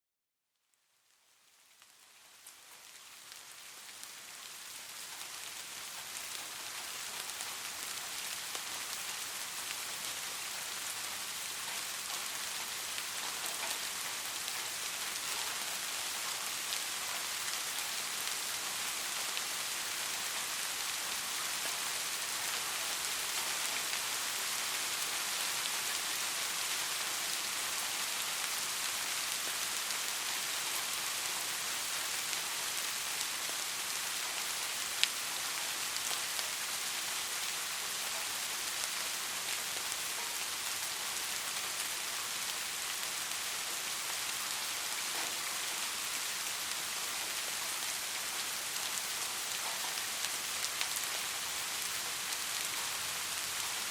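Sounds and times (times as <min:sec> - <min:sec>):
steady rain falling: 0:00.6 - 0:53.9.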